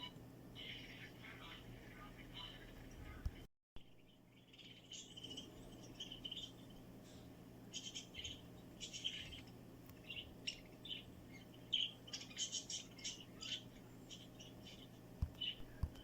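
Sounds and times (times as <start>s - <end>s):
low steady hum: 0.0s - 16.0s
small animal chirps and squeaks: 4.0s - 6.8s, 7.7s - 15.8s.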